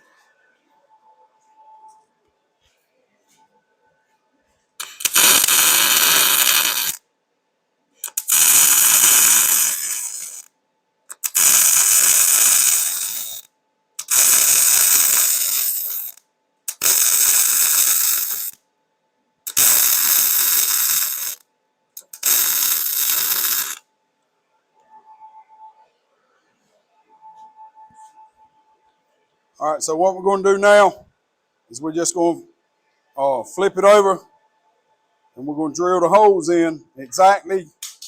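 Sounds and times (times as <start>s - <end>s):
arc welding crackling: 4.8s - 7.0s, 8.0s - 10.5s, 11.1s - 13.4s, 14.0s - 18.6s, 19.5s - 21.4s, 22.0s - 23.8s.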